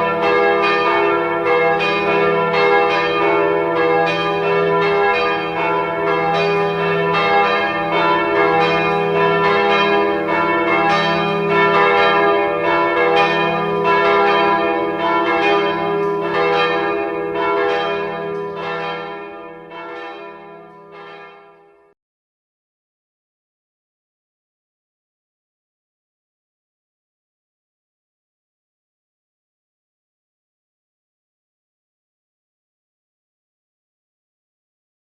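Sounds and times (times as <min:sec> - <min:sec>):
hum of large bells: 0:00.0 - 0:21.9
church bells ringing: 0:00.0 - 0:22.0.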